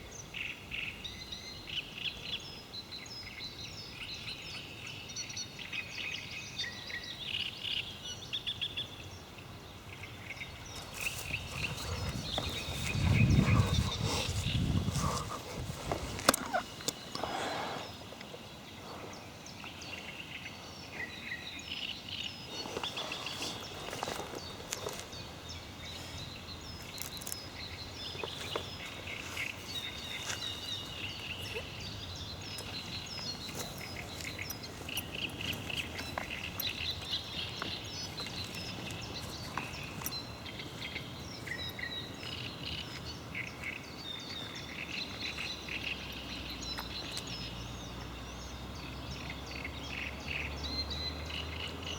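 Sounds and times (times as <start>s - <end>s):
background hiss: 0.0s - 50.6s
birds singing and chirping: 0.0s - 51.9s.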